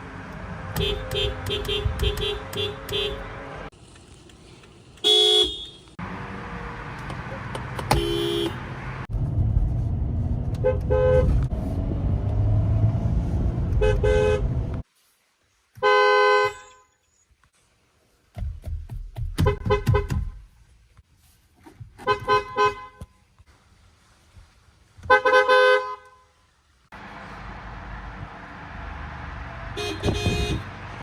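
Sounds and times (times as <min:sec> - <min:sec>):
rumbling road traffic: 0:00.0 - 0:14.9, 0:17.7 - 0:31.0
car horns honking: 0:00.7 - 0:03.7, 0:05.0 - 0:06.0, 0:07.8 - 0:08.9, 0:10.6 - 0:11.4, 0:13.8 - 0:14.7, 0:22.0 - 0:23.1, 0:29.7 - 0:30.8.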